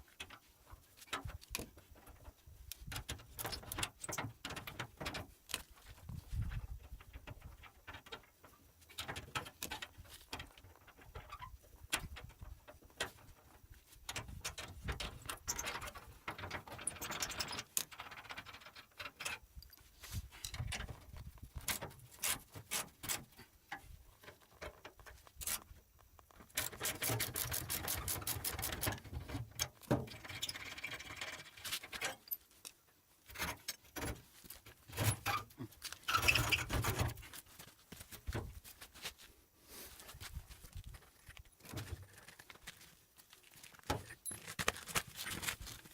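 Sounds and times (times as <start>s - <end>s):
spanners and metal parts clinking: 29.7s - 37.3s, 44.0s - 45.8s.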